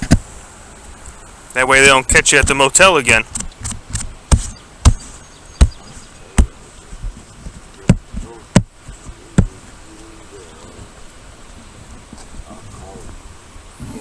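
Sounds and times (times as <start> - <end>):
sharp knocks: 3.2 - 9.6.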